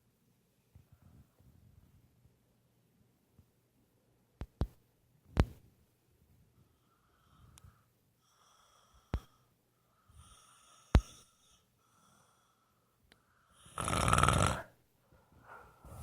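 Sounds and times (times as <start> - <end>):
loud snore: 13.6 - 14.8.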